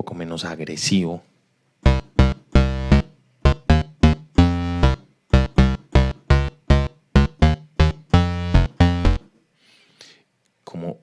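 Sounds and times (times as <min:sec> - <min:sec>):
synthesizer bass line: 0:01.8 - 0:09.2.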